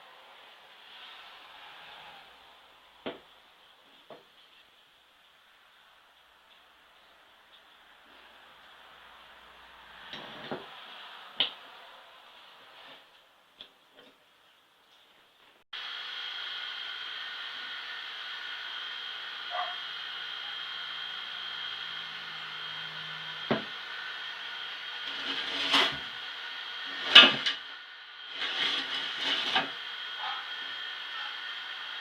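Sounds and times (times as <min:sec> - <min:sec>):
small electric motor whining: 0:15.8 - 0:32.0
rubbing and knocking: 0:25.0 - 0:26.2, 0:26.8 - 0:27.7, 0:28.3 - 0:29.9.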